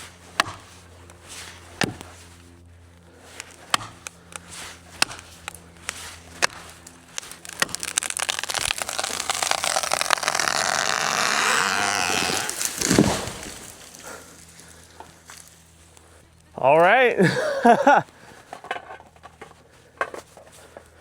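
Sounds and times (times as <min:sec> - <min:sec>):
sharp wood knocks: 0:00.4 - 0:00.6, 0:01.8 - 0:02.1, 0:03.7 - 0:04.1
crackling rush of branches: 0:03.0 - 0:16.2.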